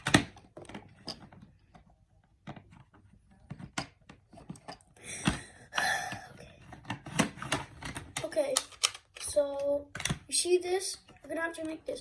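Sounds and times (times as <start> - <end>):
plastic toy pieces clicking: 6.1 - 10.2.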